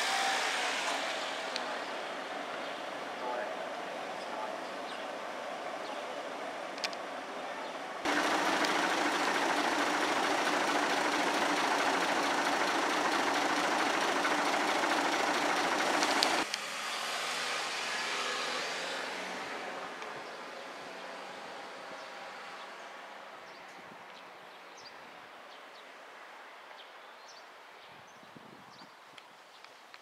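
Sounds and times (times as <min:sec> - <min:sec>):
electric train passing: 0:08.1 - 0:16.5.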